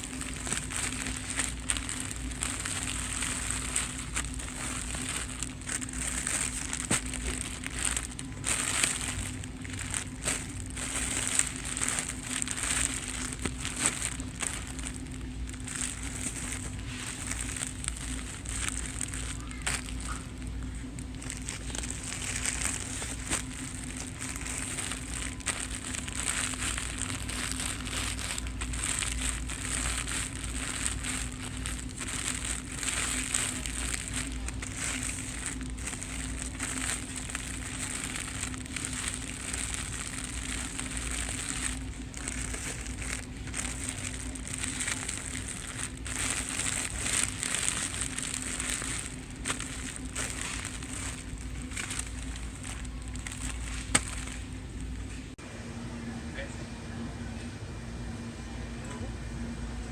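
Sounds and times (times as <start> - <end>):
packaging crinkling: 0.0 - 55.3
electrical hum: 0.0 - 59.9.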